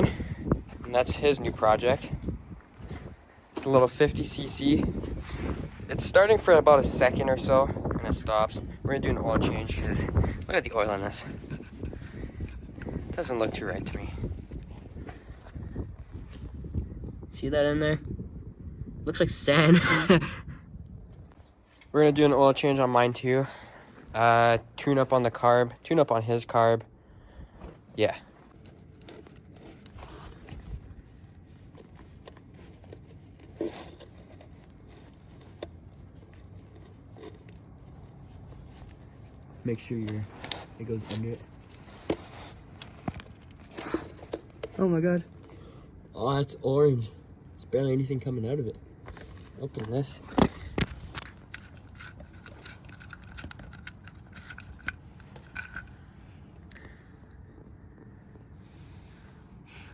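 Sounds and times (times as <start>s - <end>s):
hands and tools handling gear: 0.0s - 7.3s, 9.4s - 15.6s, 21.3s - 25.4s, 27.6s - 46.1s, 48.8s - 59.1s
wind rumble on microphone: 0.0s - 21.5s, 29.8s - 31.6s
faint low wind rumble: 0.0s - 59.9s.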